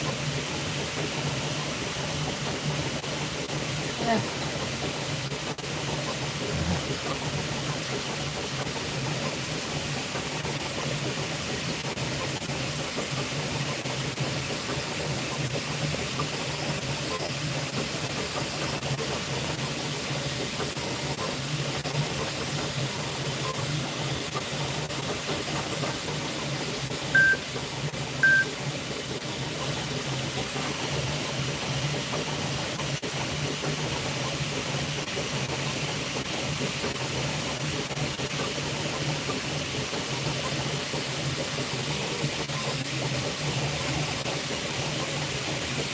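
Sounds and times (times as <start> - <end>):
printer fans and motors humming: 0.0 - 45.9
short high beeps: 27.2 - 27.4, 28.2 - 28.5.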